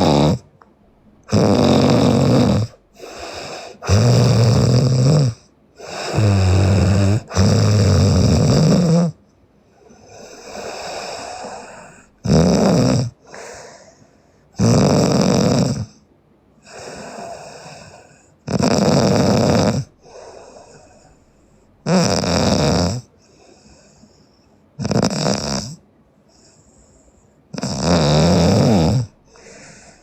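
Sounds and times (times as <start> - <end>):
woman snoring loudly: 0.0 - 0.5, 1.3 - 9.2, 10.1 - 13.9, 14.6 - 16.0, 16.7 - 21.0, 21.8 - 23.1, 24.8 - 25.8, 27.5 - 30.0
soft breathing: 2.6 - 3.9, 9.2 - 12.2, 13.2 - 14.6, 16.6 - 18.4, 19.9 - 21.8, 23.1 - 24.8, 26.2 - 27.5, 29.1 - 30.0.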